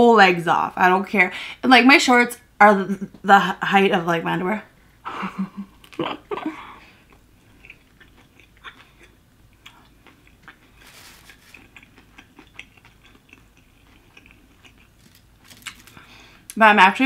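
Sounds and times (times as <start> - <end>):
person chewing food: 6.9 - 16.6.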